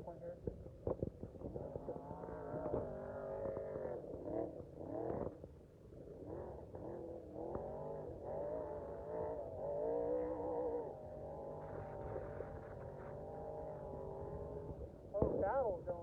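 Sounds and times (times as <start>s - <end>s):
truck engines revving: 1.5s - 15.6s.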